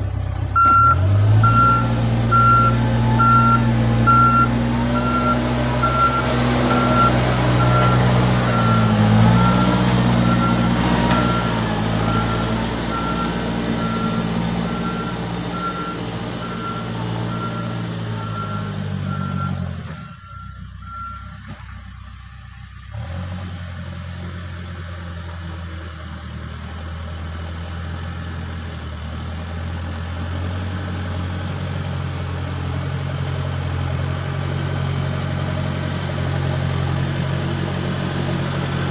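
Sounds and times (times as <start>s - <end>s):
diesel engine working: 0.0s - 38.9s
reversing alarm beeping: 0.6s - 21.4s.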